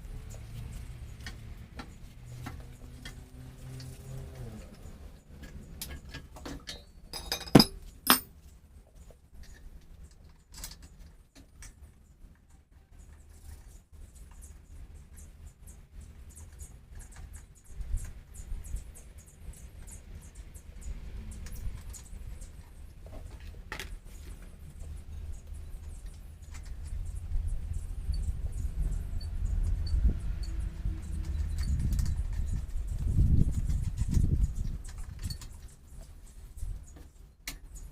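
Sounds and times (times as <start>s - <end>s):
sharp metallic clinks: 7.2s - 8.3s.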